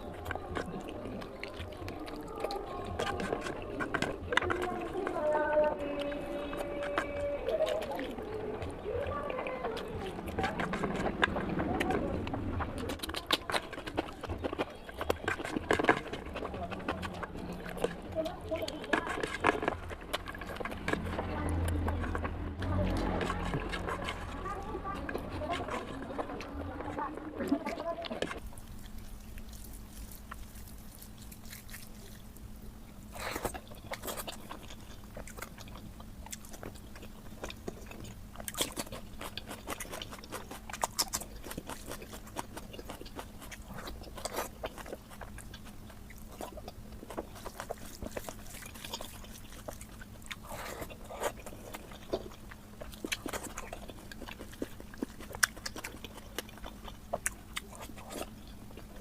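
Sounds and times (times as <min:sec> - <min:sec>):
low hum: 0:00.0 - 0:57.2
wet chewing and biting: 0:00.0 - 0:59.0.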